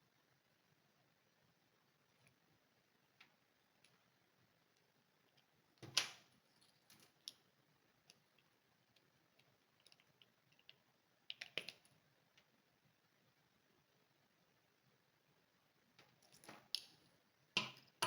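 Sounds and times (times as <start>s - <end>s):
small objects clicking and tapping: 4.7s - 12.5s, 16.0s - 18.0s.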